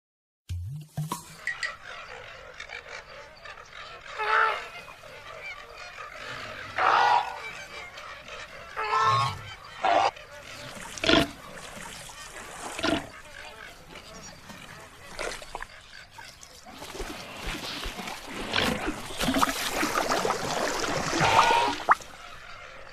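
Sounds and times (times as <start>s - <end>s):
loud animal calls: 1.6s - 11.7s, 18.2s - 22.8s.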